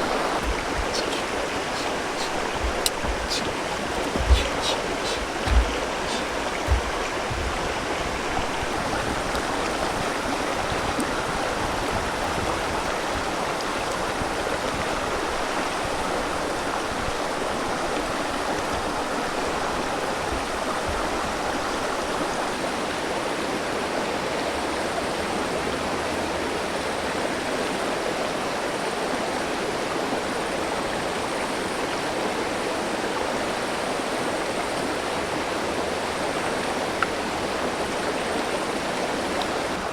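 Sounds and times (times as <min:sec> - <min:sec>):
river water rushing: 0:00.0 - 0:23.3, 0:34.7 - 0:39.9
brief knock: 0:00.4 - 0:07.8.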